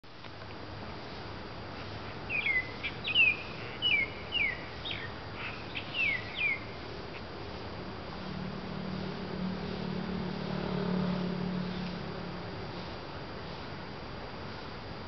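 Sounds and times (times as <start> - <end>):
background hiss: 0.0 - 15.0
songbird singing: 1.8 - 13.6.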